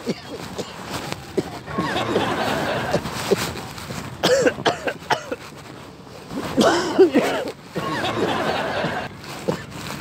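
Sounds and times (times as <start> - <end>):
man coughing: 0.0 - 2.2, 4.2 - 5.4, 6.5 - 8.2.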